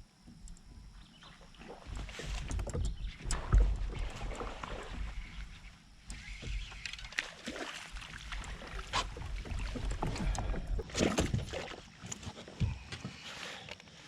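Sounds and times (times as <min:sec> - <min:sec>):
water splashing: 0:01.3 - 0:12.2.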